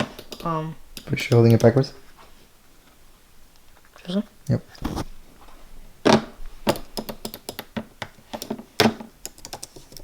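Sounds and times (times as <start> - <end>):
keyboard keys clicking: 9.2 - 10.0.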